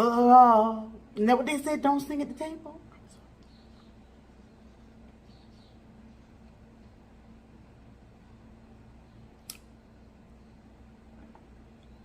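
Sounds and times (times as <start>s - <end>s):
low steady hum: 0.0s - 12.0s
mouth click while eating: 9.4s - 9.7s.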